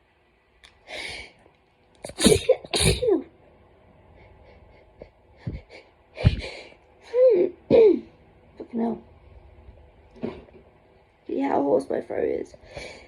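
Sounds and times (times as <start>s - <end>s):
person sneezing: 2.0s - 3.2s.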